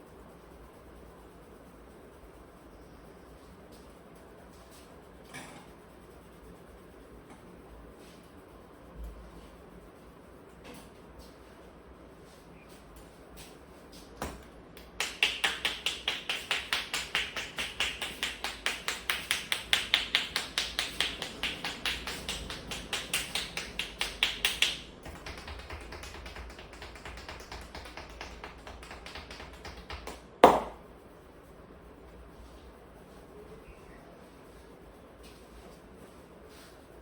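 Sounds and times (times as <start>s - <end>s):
hands tapping on a head: 14.2s - 30.8s.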